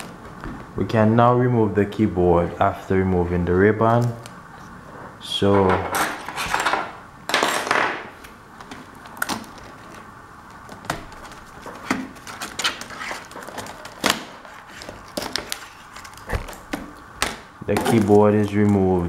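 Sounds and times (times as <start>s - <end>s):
scraping rustles: 8.6s - 17.0s.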